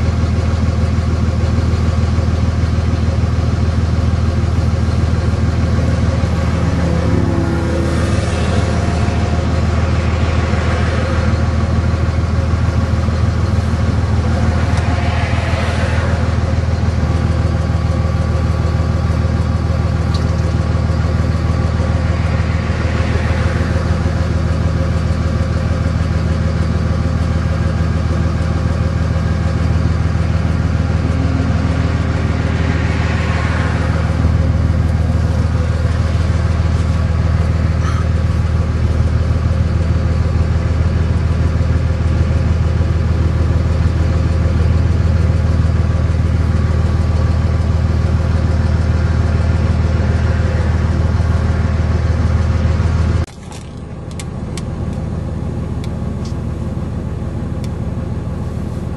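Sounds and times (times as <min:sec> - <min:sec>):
vehicle engine humming: 0:00.0 - 0:58.9
rushing noise: 0:04.6 - 0:26.5, 0:29.0 - 0:38.3.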